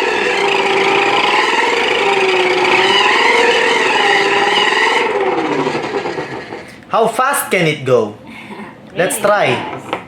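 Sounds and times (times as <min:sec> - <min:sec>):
toy car motor whining: 0:00.0 - 0:06.7.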